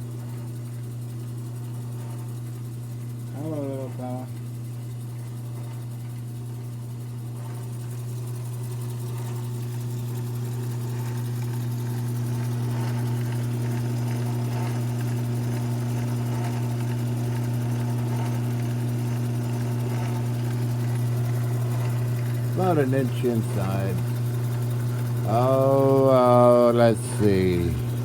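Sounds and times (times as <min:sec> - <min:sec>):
lathe motor humming: 0:07.6 - 0:28.0
drill bit boring into workpiece: 0:11.0 - 0:28.0.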